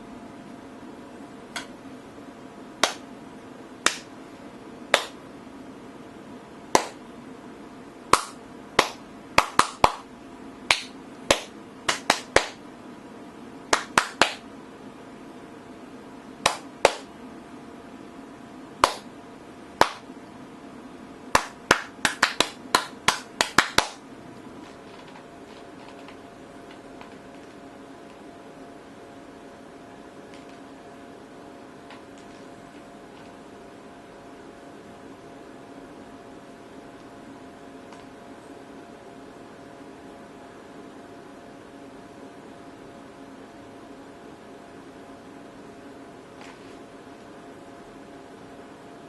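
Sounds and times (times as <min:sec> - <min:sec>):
steady low hum: 0:00.0 - 0:49.0
sharp hand claps: 0:02.8 - 0:03.0, 0:03.8 - 0:04.1, 0:04.9 - 0:05.2, 0:06.7 - 0:07.0, 0:08.1 - 0:10.1, 0:10.7 - 0:12.6, 0:13.7 - 0:14.4, 0:16.4 - 0:17.1, 0:18.8 - 0:19.1, 0:19.8 - 0:20.1, 0:21.3 - 0:24.0.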